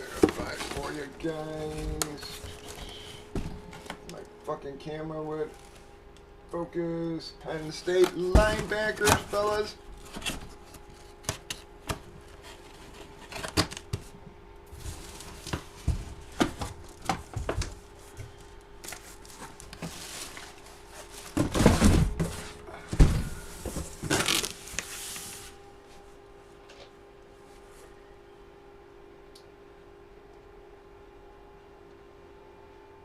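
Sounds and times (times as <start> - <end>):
rustling and crinkling: 0.0 - 4.4, 5.4 - 6.0, 7.7 - 26.1
faint steady hum: 0.0 - 33.0.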